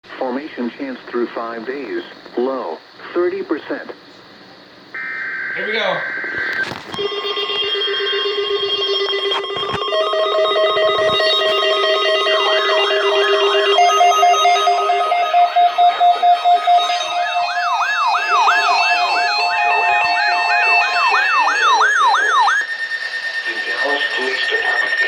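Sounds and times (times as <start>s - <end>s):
falling siren-like sweep: 5.0s - 25.0s
fast pulsing beep: 5.0s - 25.0s
steady alert tones: 5.0s - 25.0s.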